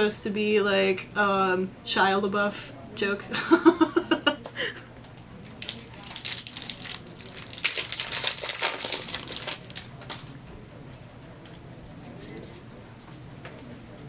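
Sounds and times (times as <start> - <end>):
foil wrapper crinkling: 5.4 - 10.3.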